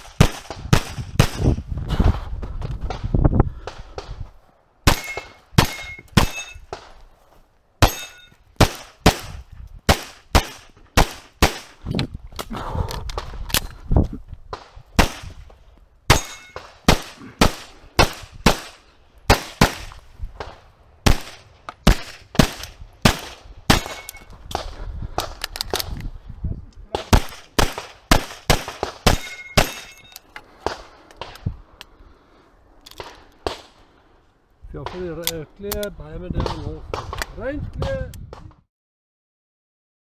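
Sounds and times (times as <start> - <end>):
handgun shots: 0.0 - 1.6, 4.9 - 7.0, 7.8 - 13.8, 15.0 - 15.4, 16.1 - 26.0, 27.0 - 31.4.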